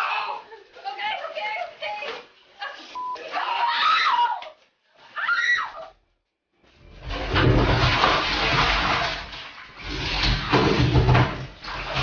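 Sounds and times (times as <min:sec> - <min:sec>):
water rushing and splashing: 0:06.9 - 0:12.0.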